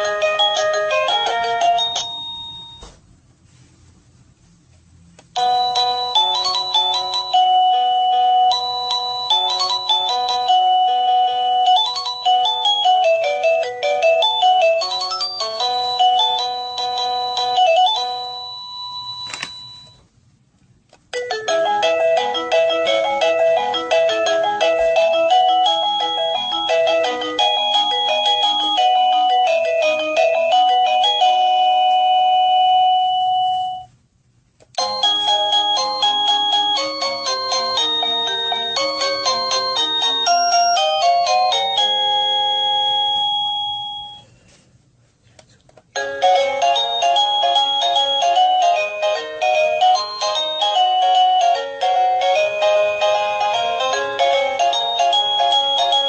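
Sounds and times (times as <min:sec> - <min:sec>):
doorbell chime melody: 0:00.0 - 0:03.0, 0:05.4 - 0:20.0, 0:21.2 - 0:33.9, 0:34.8 - 0:44.4, 0:46.0 - 0:56.0.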